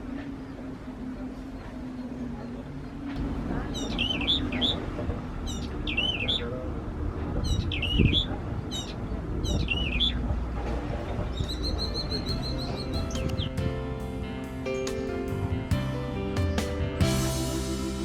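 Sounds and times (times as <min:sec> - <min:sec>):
low rumbling background noise: 0:00.0 - 0:18.0
bird chirping: 0:11.1 - 0:13.7.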